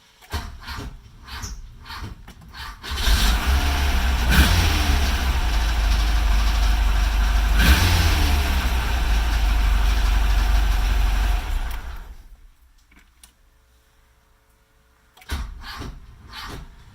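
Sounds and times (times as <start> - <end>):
machine running deep and low: 3.0 - 12.4.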